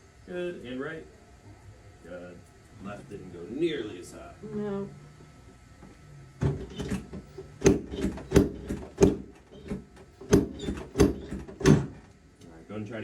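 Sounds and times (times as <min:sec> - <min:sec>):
sharp knocks: 0:06.4 - 0:12.0.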